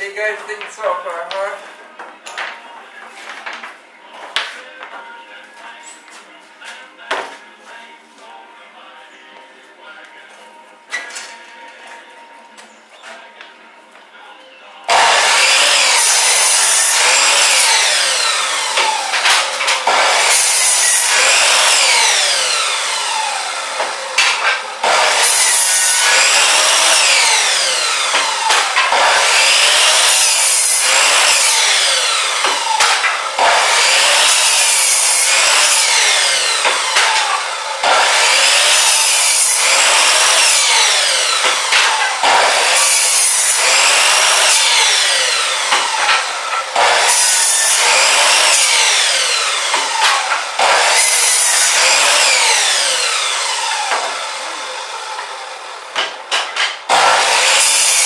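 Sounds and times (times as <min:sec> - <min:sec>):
saw cutting through wood: 0:14.9 - 0:58.0.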